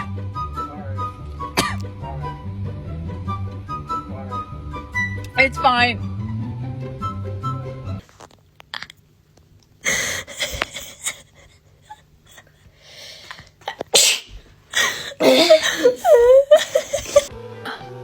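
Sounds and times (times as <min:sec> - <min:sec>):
woman sneezing: 0:13.7 - 0:17.3.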